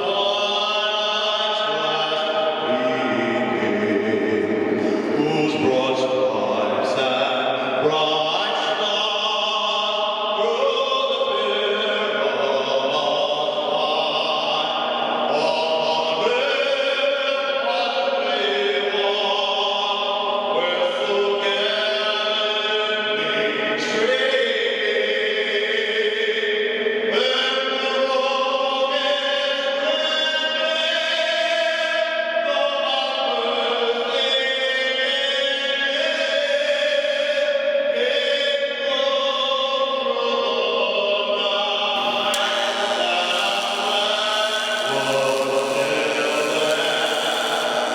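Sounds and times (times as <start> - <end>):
choir singing slow chords: 40.7 - 47.9.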